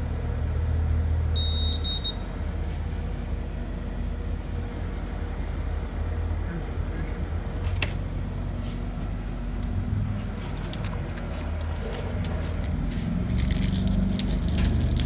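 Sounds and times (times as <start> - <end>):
clattering handling noise: 10.1 - 15.0.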